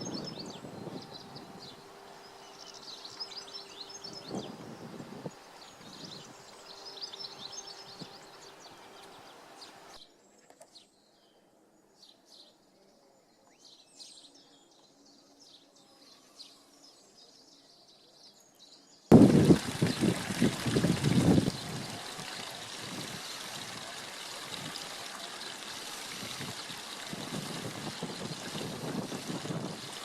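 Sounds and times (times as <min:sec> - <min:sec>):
birds singing and chirping: 0:00.0 - 0:10.1, 0:13.2 - 0:30.0
background hiss: 0:19.1 - 0:30.0
running water rushing: 0:19.1 - 0:30.0.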